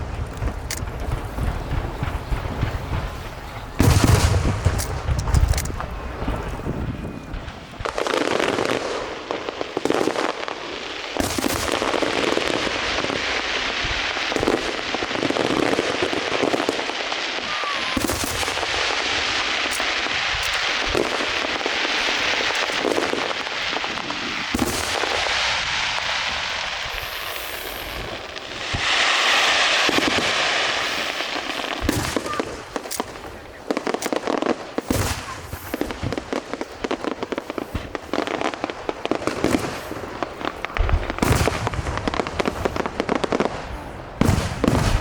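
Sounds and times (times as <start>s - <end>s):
fireworks crackling: 0.0s - 45.0s
fireworks sharp bangs: 0.0s - 45.0s.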